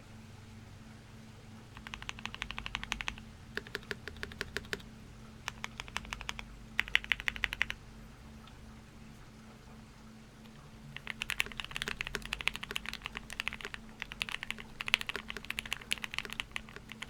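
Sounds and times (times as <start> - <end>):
mechanical keyboard typing: 1.7 - 4.9, 5.5 - 7.8, 10.5 - 17.0.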